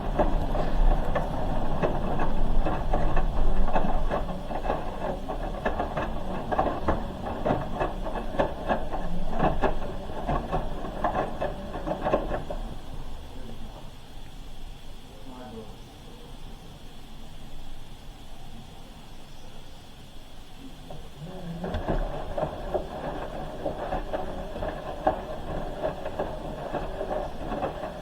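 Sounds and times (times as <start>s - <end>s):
laundry sloshing in washing drum: 21.2s - 28.0s.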